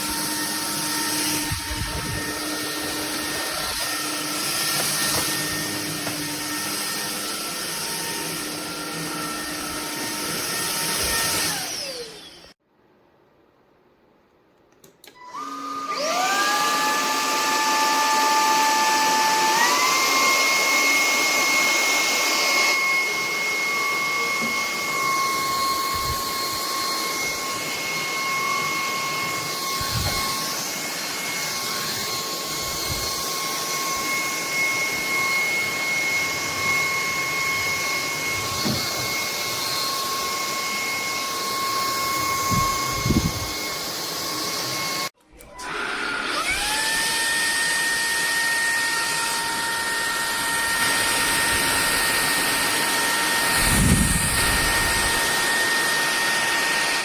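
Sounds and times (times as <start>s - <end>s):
vacuum motor whine: 0.0s - 12.6s, 15.0s - 57.0s.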